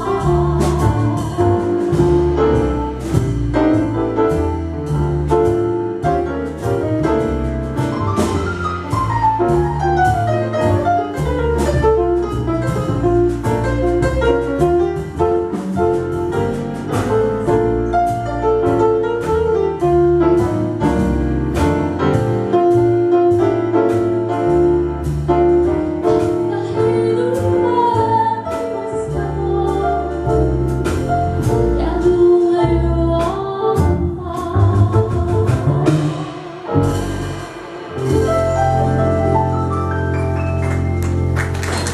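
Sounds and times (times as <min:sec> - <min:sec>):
pop band with drum beat: 0:00.0 - 0:40.2
woman singing: 0:26.5 - 0:30.4, 0:31.8 - 0:36.6.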